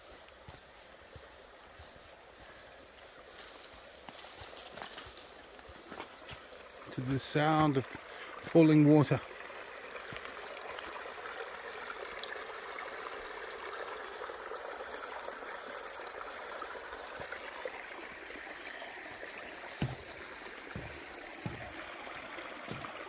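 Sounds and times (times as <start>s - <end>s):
stream water rushing: 6.0s - 23.0s
dull low thumps: 19.8s - 21.9s.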